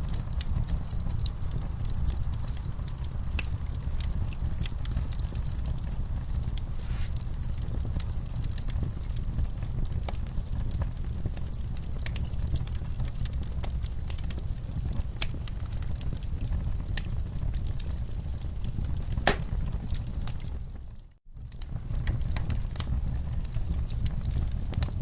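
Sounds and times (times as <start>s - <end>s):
low rumble of burning: 0.0s - 25.0s
wood fire crackling: 0.0s - 25.0s
sharp pops of burning wood: 0.1s - 18.0s, 18.6s - 20.4s.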